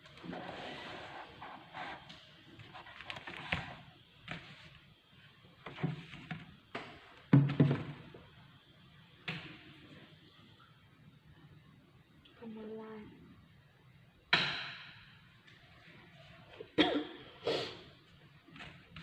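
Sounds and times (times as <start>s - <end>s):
knocks and thumps: 5.7s - 8.1s.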